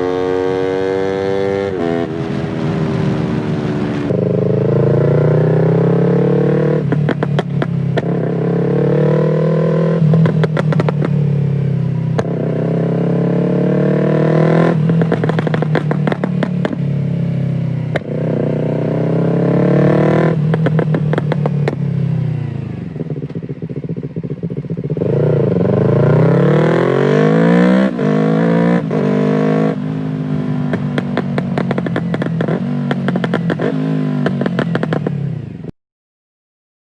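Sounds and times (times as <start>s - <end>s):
motorcycle engine revving: 0.0s - 35.7s.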